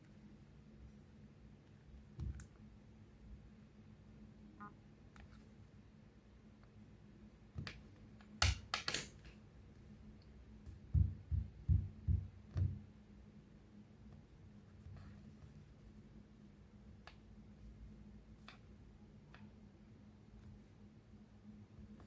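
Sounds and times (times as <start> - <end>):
soft low thumps: 10.7 - 12.8.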